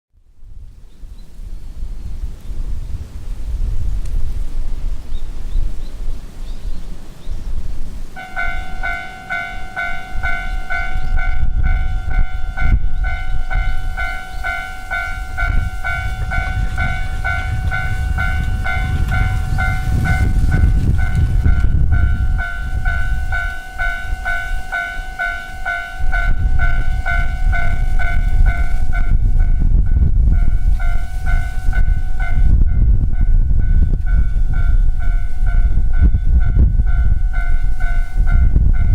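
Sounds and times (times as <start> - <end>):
wind rumbling on microphone: 0.1 - 38.9
level-crossing electronic bell dinging: 8.2 - 38.9.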